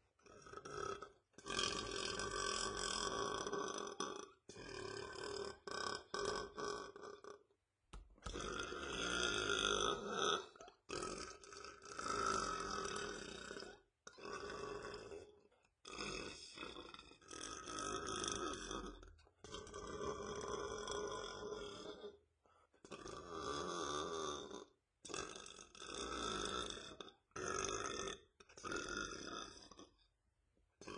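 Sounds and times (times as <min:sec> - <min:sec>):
man burping: 0:00.2 - 0:07.4, 0:08.0 - 0:22.2.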